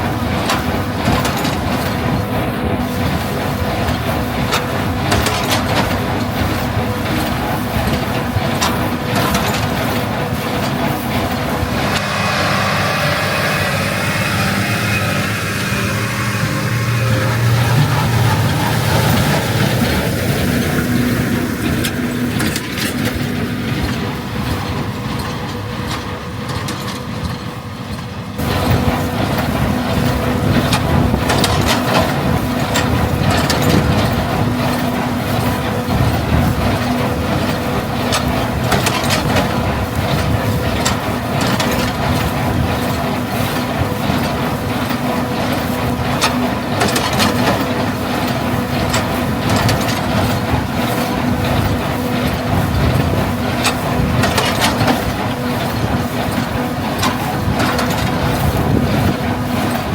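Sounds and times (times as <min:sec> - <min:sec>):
tractor engine running: 0:00.0 - 0:59.9
baler mechanism clattering: 0:03.0 - 0:59.9.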